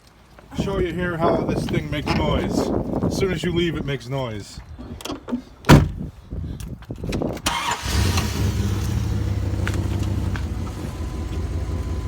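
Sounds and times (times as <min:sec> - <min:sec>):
loud thump: 0:05.7 - 0:06.0
car engine starting and idling: 0:07.5 - 0:12.0.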